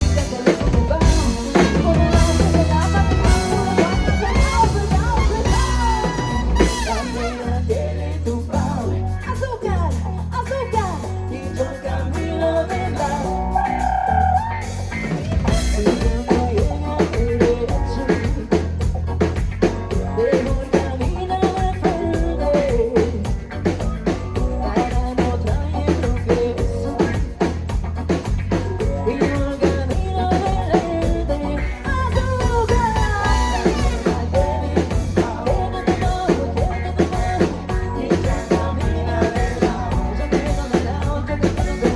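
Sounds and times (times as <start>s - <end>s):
bass line: 0.0s - 41.9s
drum kit beat: 0.0s - 41.9s
person singing: 0.0s - 41.9s.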